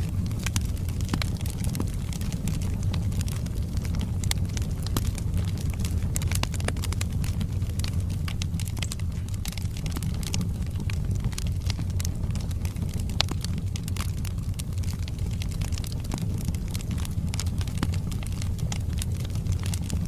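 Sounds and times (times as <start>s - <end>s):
logs crackling and popping: 0.0s - 20.0s
low rumble of flames: 0.0s - 20.0s.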